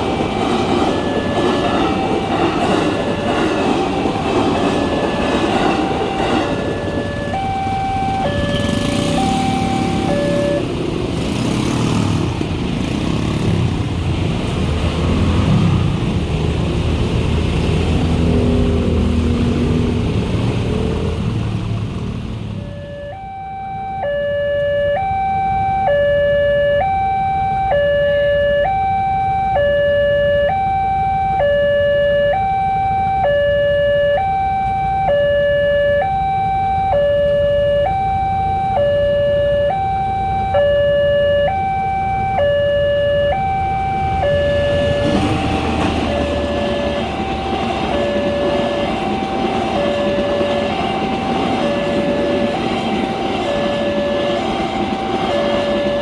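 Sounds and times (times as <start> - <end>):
electronic level crossing siren: 0.0 - 10.7, 22.6 - 56.0
train rumble: 0.0 - 22.8, 43.3 - 56.0.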